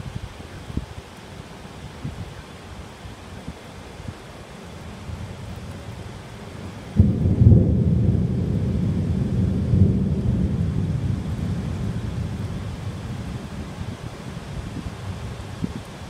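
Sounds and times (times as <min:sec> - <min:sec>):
heavy rain hissing: 0:00.0 - 0:16.0
thunder rumbling: 0:05.2 - 0:15.8.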